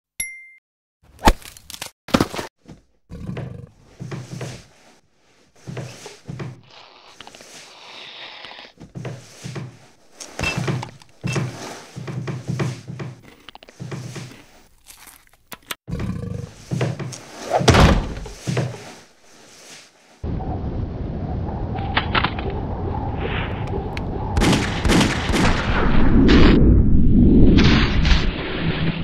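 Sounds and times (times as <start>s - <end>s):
cartoon knocks and thuds: 15.9s - 18.8s.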